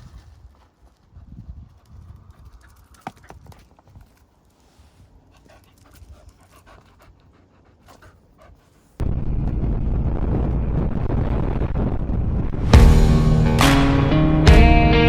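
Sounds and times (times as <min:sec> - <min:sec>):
dog panting: 0:05.2 - 0:09.0.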